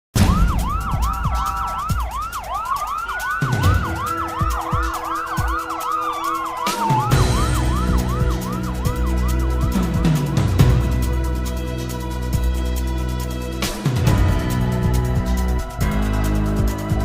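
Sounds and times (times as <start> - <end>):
electronic music: 0.2 - 17.0
siren-like wailing sweep: 0.2 - 17.0
bass: 7.0 - 17.0.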